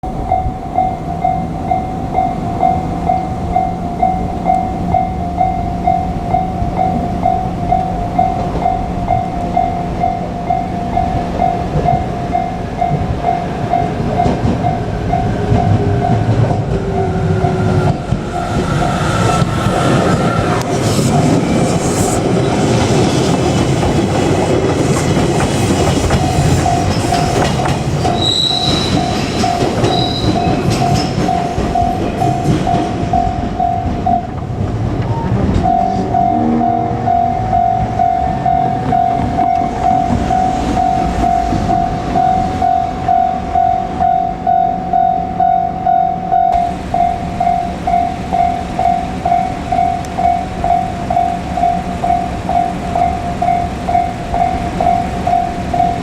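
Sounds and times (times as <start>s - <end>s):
electric train passing: 0.0s - 56.0s
level crossing bell ringing: 0.1s - 20.1s, 28.9s - 34.4s, 35.6s - 56.0s
train wheel clatter: 10.9s - 36.9s.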